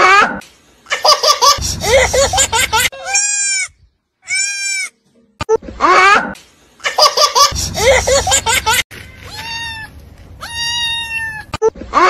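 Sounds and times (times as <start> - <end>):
young child laughing: 0.0 - 3.2, 5.8 - 8.8
goat bleats: 3.0 - 4.9.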